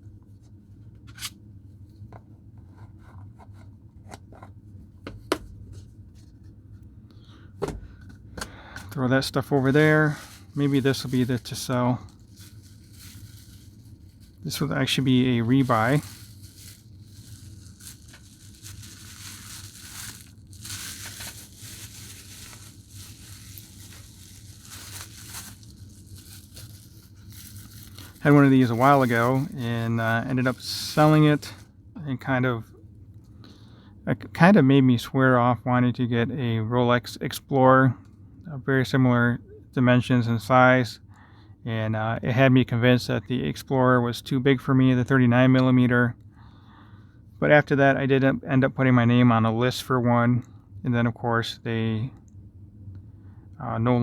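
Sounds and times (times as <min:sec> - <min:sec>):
watch packaging clicks and rustles: 0:08.0 - 0:31.6.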